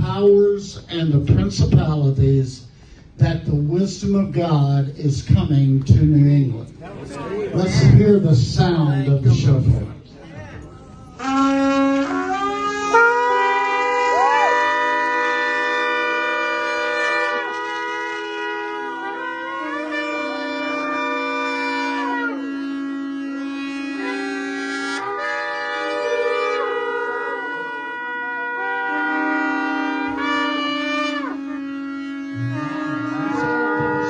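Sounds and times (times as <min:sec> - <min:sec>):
ram's horns blowing long blasts: 0:11.2 - 0:34.0.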